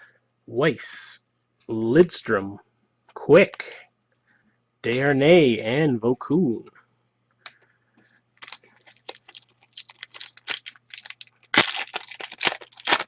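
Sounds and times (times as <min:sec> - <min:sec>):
foil wrapper tearing and crinkling: 0:08.4 - 0:13.0.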